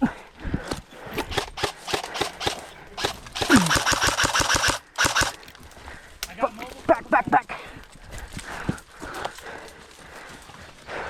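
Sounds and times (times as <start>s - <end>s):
airsoft rifle firing: 1.1s - 5.4s.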